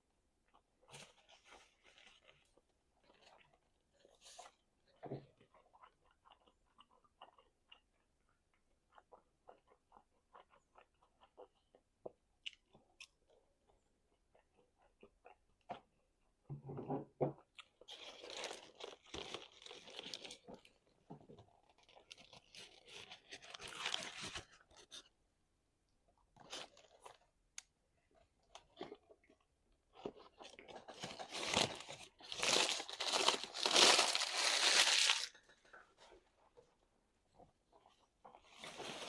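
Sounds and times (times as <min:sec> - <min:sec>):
crisp crunching of chewing: 0:00.5 - 0:16.0, 0:17.4 - 0:25.0, 0:28.1 - 0:35.9.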